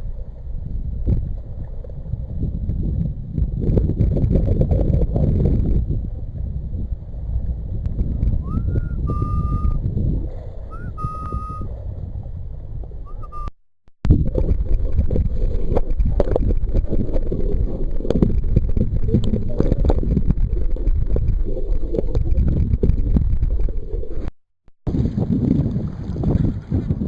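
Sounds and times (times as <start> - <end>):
wind buffeting microphone: 0.0 - 24.3, 24.9 - 27.0
short rising whistle notes: 8.4 - 9.8, 10.7 - 11.7, 13.0 - 13.6
water sloshing around kayak: 14.1 - 24.3
water splashes: 14.1 - 24.3.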